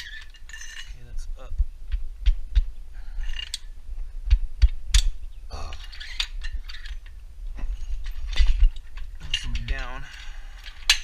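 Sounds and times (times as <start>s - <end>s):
jack clicking and clanking: 4.6s - 11.0s.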